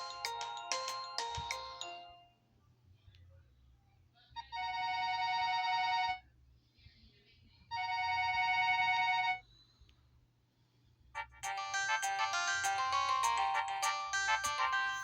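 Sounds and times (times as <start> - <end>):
phone ringtone: 0.0 - 2.3, 11.2 - 15.0.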